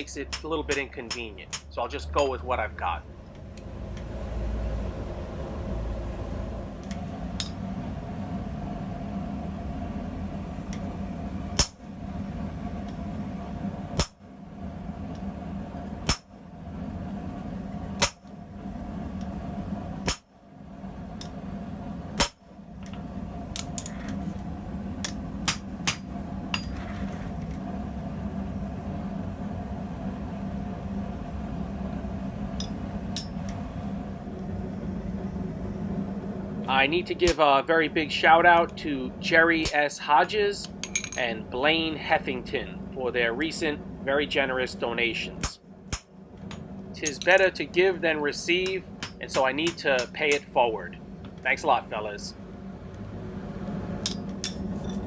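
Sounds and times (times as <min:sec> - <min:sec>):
hammer striking steel on anvil: 0:00.0 - 0:02.4, 0:11.6 - 0:11.9, 0:14.0 - 0:14.2, 0:16.0 - 0:16.3, 0:18.0 - 0:18.3, 0:20.0 - 0:20.3, 0:22.2 - 0:22.4, 0:25.0 - 0:26.8, 0:32.6 - 0:33.4, 0:37.3 - 0:37.5, 0:40.6 - 0:41.3, 0:45.4 - 0:46.1, 0:47.0 - 0:47.5, 0:48.6 - 0:50.6, 0:54.0 - 0:55.0
steady hum: 0:00.0 - 0:55.0.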